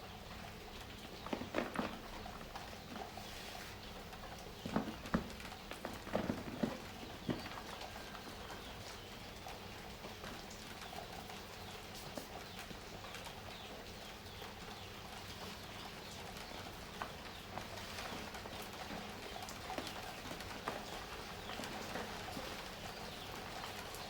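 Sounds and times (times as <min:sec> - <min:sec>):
rain hissing: 0:01.3 - 0:08.9.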